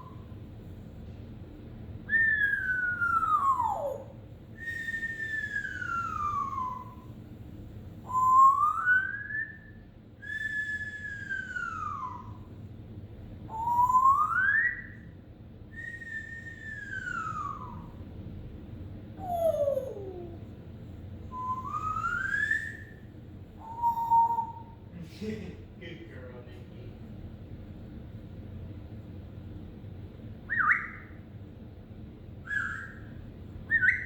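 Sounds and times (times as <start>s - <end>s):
parrot whistling: 0.0s - 0.3s, 2.1s - 7.1s, 8.0s - 12.5s, 13.5s - 15.1s, 15.7s - 18.0s, 19.2s - 20.4s, 21.3s - 24.8s, 30.5s - 31.2s, 32.4s - 34.0s.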